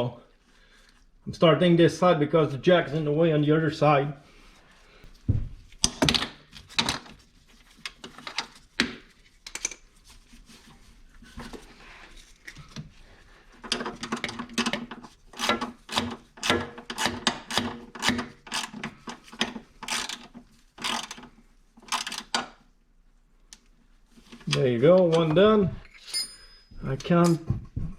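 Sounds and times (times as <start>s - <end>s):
ratchet wrench ratcheting: 15.4s - 18.8s, 19.8s - 21.2s.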